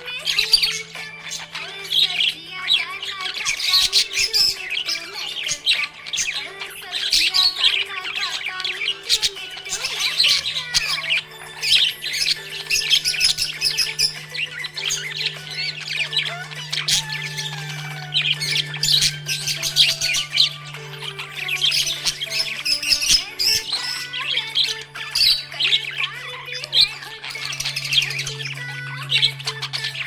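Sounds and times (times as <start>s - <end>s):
budgies chirping and squawking: 0.0s - 30.0s
steady low hum: 11.9s - 22.6s, 24.8s - 30.0s.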